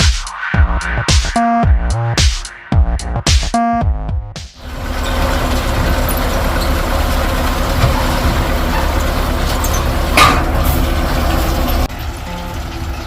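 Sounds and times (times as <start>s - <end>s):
tractor engine running: 4.6s - 13.0s.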